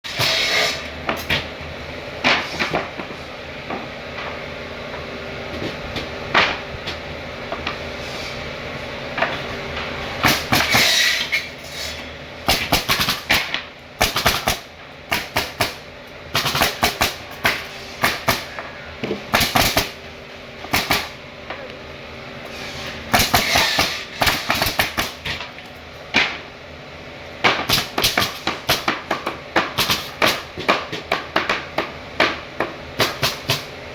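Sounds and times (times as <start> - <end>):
low background hum: 0.1 - 33.9
hammer strikes on wood: 27.4 - 33.6.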